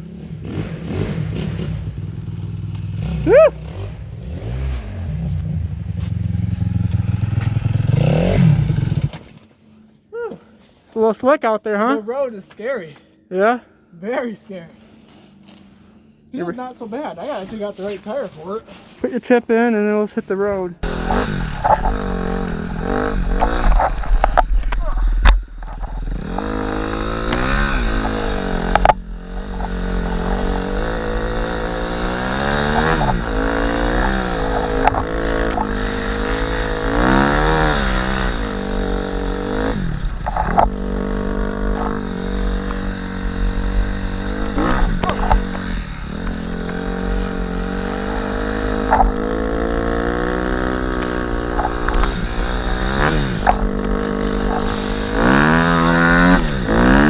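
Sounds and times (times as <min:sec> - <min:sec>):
dirt bike engine revving: 0:00.0 - 0:09.3, 0:20.8 - 0:24.3, 0:25.2 - 0:57.0.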